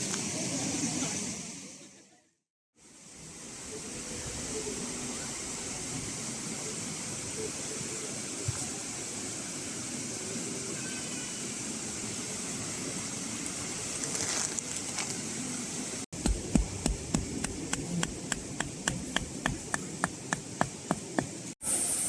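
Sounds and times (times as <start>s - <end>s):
sharp taps with dull thuds: 16.2s - 21.4s.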